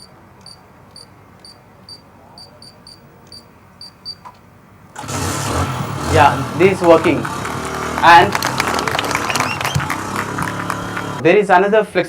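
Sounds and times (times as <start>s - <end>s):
keypad beeping: 0.0s - 4.3s
motorbike engine running: 5.0s - 11.2s.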